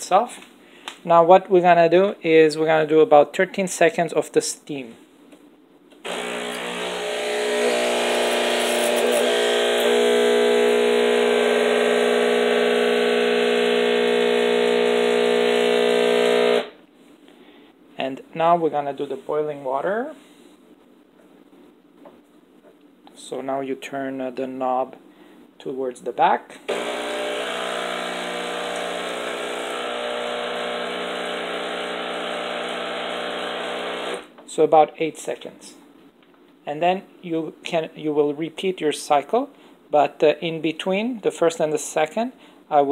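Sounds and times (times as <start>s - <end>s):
buzzing machine hum: 6.0s - 16.8s, 26.7s - 34.3s.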